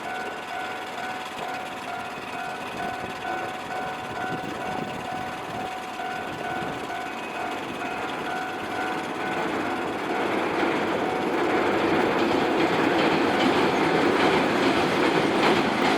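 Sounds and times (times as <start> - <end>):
level crossing bell ringing: 0.0 - 11.3
train rumble: 0.0 - 15.9.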